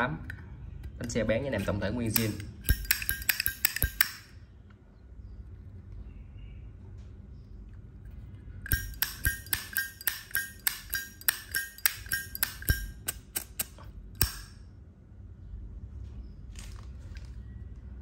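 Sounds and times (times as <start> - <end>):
lighter clicking: 8.7 - 14.5.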